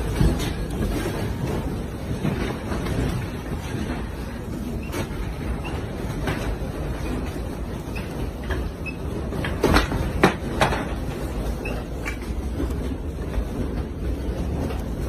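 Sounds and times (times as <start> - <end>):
sharp knocks and clatters: 0.0 - 15.0.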